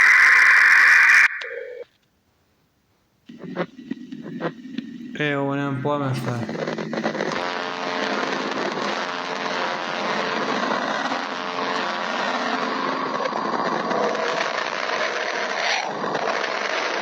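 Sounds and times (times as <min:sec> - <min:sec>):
faint held tones: 0:01.2 - 0:02.0
steady rushing drone: 0:03.4 - 0:14.9.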